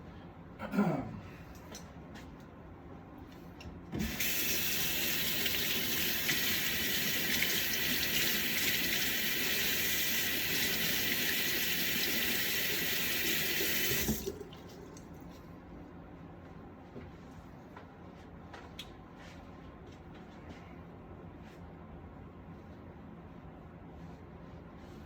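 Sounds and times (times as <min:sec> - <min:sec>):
water running into sink: 0:04.0 - 0:15.1.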